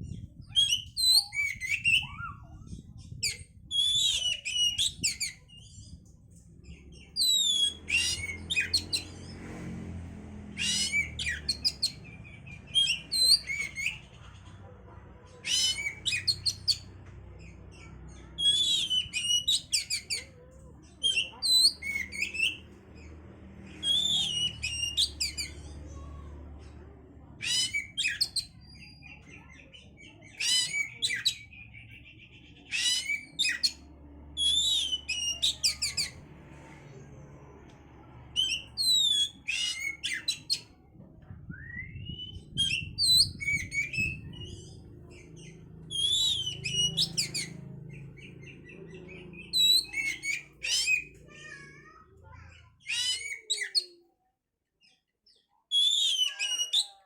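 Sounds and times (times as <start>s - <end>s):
songbird whistling rapid phrases: 0.0s - 5.5s, 7.1s - 9.1s, 10.6s - 14.0s, 15.4s - 16.8s, 18.4s - 20.3s, 23.8s - 25.6s, 27.4s - 29.2s, 34.4s - 36.1s, 38.4s - 40.6s, 41.5s - 44.8s, 45.8s - 47.6s, 48.2s - 51.9s, 55.7s - 57.0s.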